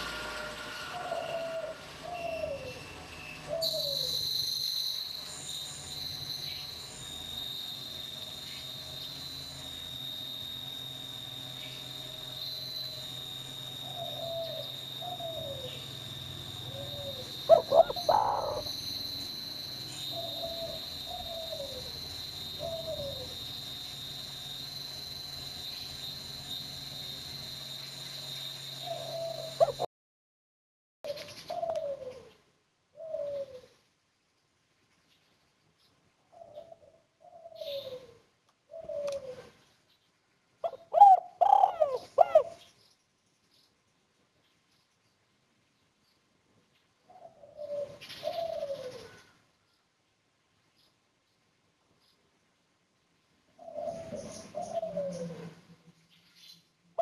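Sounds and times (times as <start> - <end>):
dove cooing: 0.9 - 2.8, 3.4 - 4.2, 13.9 - 15.8, 16.6 - 18.7, 20.1 - 21.9, 22.6 - 23.4, 28.9 - 29.9, 31.1 - 33.8, 36.3 - 39.6, 40.6 - 42.7, 47.1 - 49.4, 53.6 - 55.9
high-pitched insect buzz: 3.6 - 29.9.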